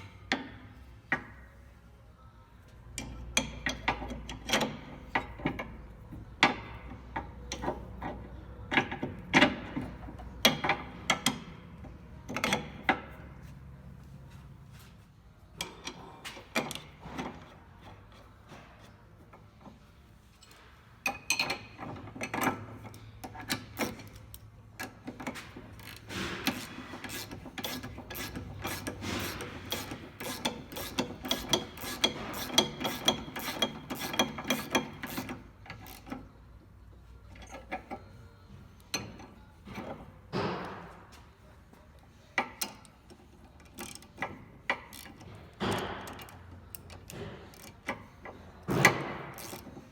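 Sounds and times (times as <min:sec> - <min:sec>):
hand ratchet clicking: 0:22.9 - 0:36.2, 0:43.6 - 0:48.1, 0:48.9 - 0:49.9.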